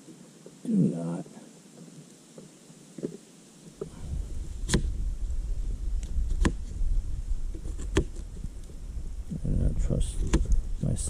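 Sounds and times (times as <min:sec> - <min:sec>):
low rumble: 0:03.9 - 0:11.0.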